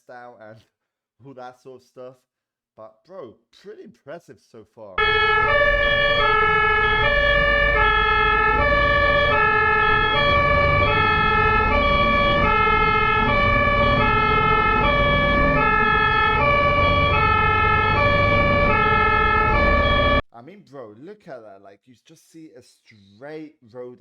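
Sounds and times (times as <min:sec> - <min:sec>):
two-tone ambulance siren: 0:05.0 - 0:20.2
low rumble: 0:05.4 - 0:20.0.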